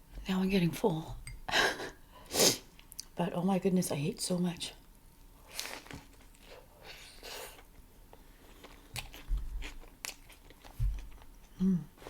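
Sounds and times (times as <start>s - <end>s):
person chewing food: 7.5s - 12.0s.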